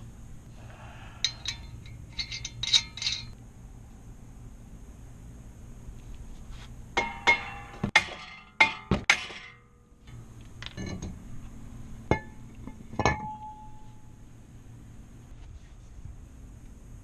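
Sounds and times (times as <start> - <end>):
light metallic rattle: 0.7 - 3.4, 7.0 - 14.2
metal tools clinking: 1.2 - 3.4, 10.6 - 11.2.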